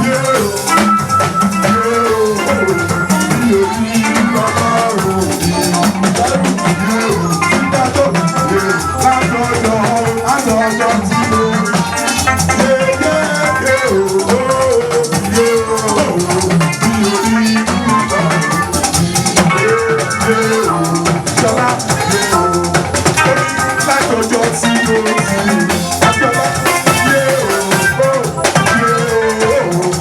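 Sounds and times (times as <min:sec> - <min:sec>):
melody line: 0:00.0 - 0:29.9
drums: 0:00.0 - 0:30.0
guitar: 0:00.0 - 0:30.0
rattle shaking in time: 0:01.4 - 0:30.0.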